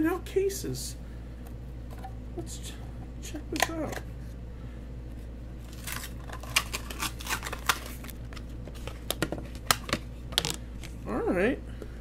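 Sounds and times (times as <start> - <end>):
low room hum: 0.0 - 12.0
packaging clicks crinkles and tearing: 5.6 - 11.0.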